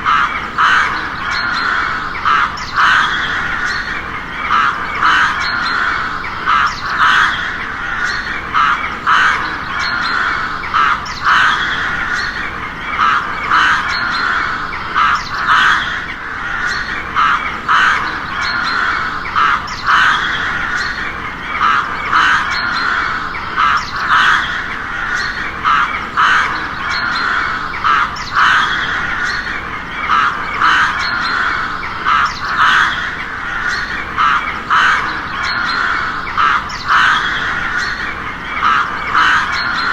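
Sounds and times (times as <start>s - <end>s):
crows cawing: 0.0s - 39.9s.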